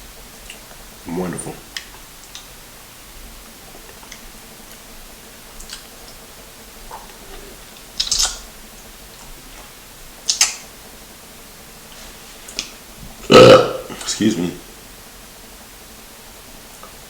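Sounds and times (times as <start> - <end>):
mouth clicks while chewing: 5.6 - 6.2, 6.9 - 8.5, 9.2 - 10.7
loud mouth smacks: 6.9 - 8.5, 10.3 - 10.6.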